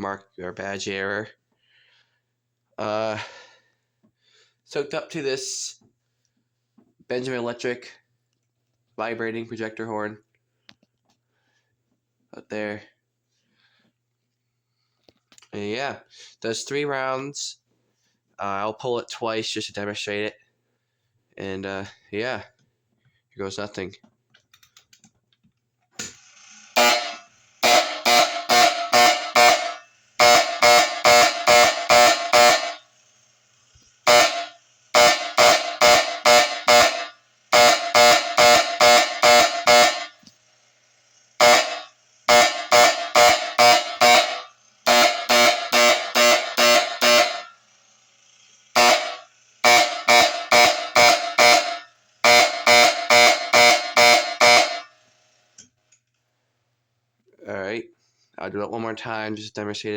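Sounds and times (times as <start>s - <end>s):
fire alarm horn buzzing blasts: 26.7s - 33.1s, 34.0s - 40.3s, 41.4s - 47.7s, 48.7s - 55.2s.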